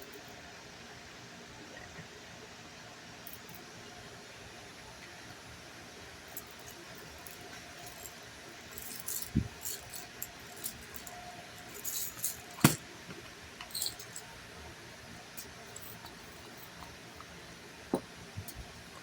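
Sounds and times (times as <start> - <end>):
small metal pieces clinking: 6.4 - 12.8, 13.6 - 14.4, 15.4 - 16.9.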